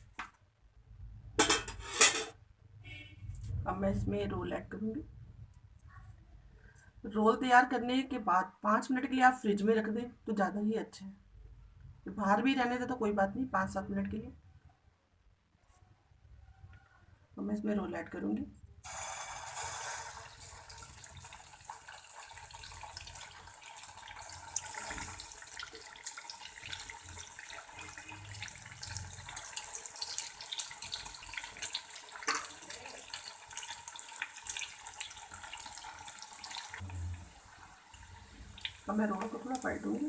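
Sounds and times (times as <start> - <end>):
bread rolls frying in hot oil: 18.8 - 40.0.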